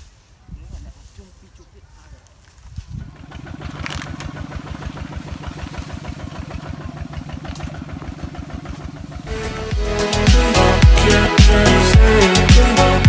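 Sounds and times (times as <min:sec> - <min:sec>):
small engine chugging: 0:03.0 - 0:09.8
music: 0:09.3 - 0:13.0.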